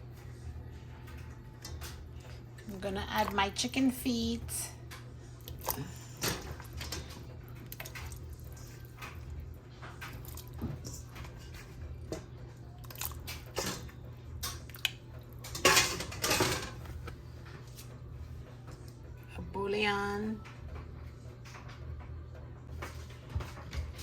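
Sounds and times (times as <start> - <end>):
steady low hum: 0.0 - 24.0
pot clattering: 15.4 - 16.8.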